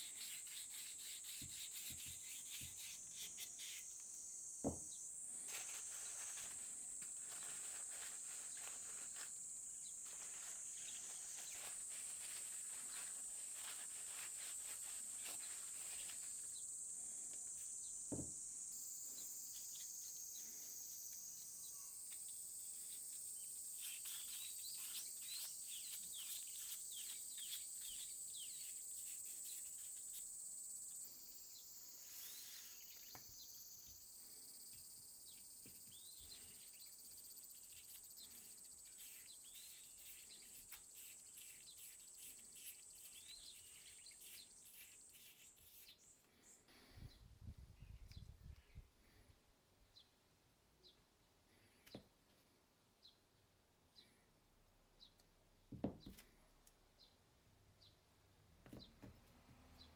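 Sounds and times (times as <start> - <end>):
high insect trill: 0.0 - 46.7
small birds chirping: 0.0 - 50.2, 50.8 - 55.3, 55.9 - 59.9.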